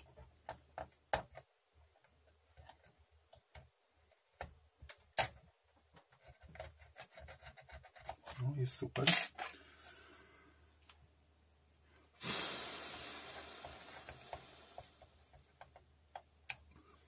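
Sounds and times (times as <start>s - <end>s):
hissing rush of blown air: 12.2s - 15.1s.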